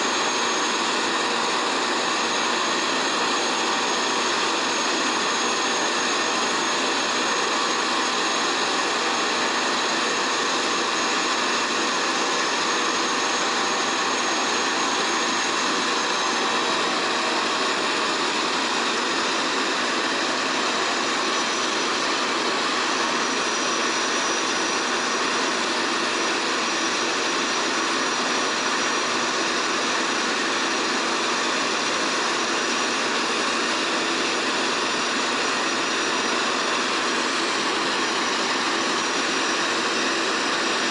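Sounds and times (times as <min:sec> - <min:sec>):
helicopter rotor rushing: 0:00.0 - 0:40.9
helicopter turbine whine: 0:00.0 - 0:40.9.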